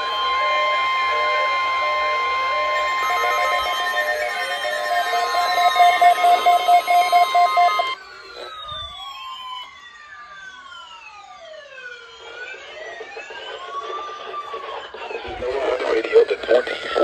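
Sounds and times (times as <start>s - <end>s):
loud steady alert tone: 0.0s - 9.1s
pulsing beep: 0.0s - 9.1s
electronic siren wailing: 0.0s - 17.0s.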